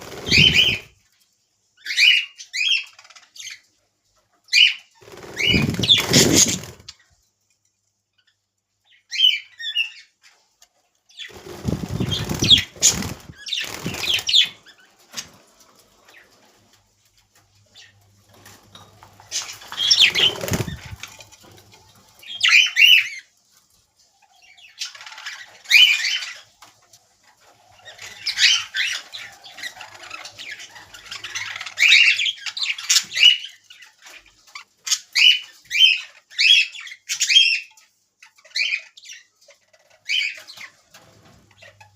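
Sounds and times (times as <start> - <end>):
budgerigars fluttering wings: 0.0 - 0.9, 5.0 - 7.0, 11.2 - 15.4, 19.1 - 21.5.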